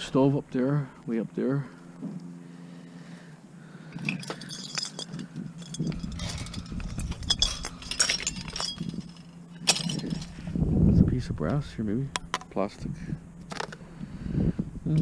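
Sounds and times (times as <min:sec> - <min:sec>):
steady low hum: 0:00.0 - 0:15.0
scrap metal clinking and rattling: 0:03.9 - 0:10.6.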